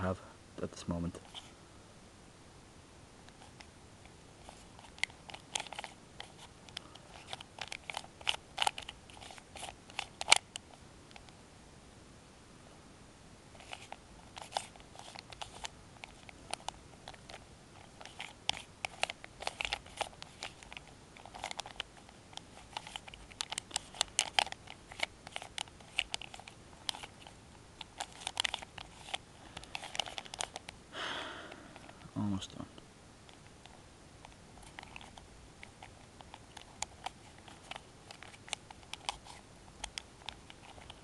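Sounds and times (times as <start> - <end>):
puzzle cube clicking: 4.4 - 10.6, 13.6 - 30.8, 34.6 - 41.0.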